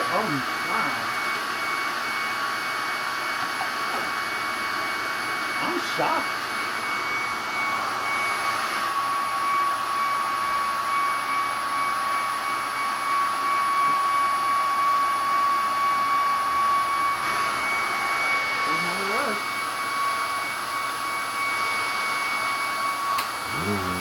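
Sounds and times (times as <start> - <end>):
vacuum cleaner whining: 0.0 - 24.0.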